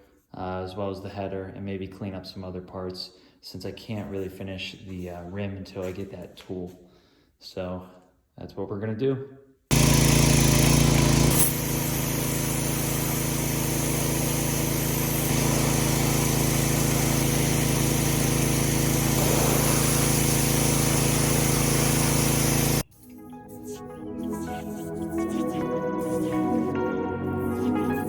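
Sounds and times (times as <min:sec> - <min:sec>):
pressure washer running: 0:09.7 - 0:22.9.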